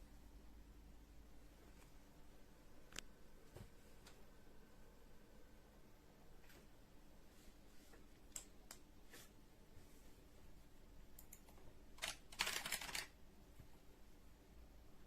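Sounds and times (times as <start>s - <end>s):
computer mouse clicking: 11.2s - 13.1s.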